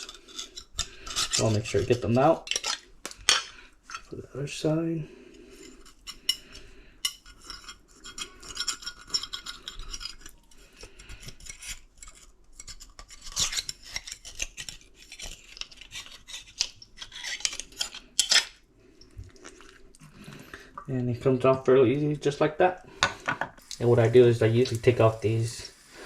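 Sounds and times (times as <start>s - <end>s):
knife scraping clam shell: 0.0s - 4.1s, 5.6s - 18.6s.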